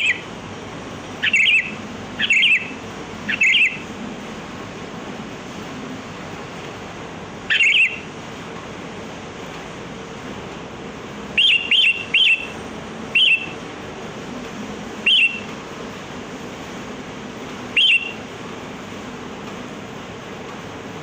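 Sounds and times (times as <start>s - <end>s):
bird giving sharp calls: 0.0s - 0.3s, 1.2s - 3.9s, 7.5s - 8.1s, 11.3s - 13.6s, 15.0s - 15.5s, 17.7s - 18.2s.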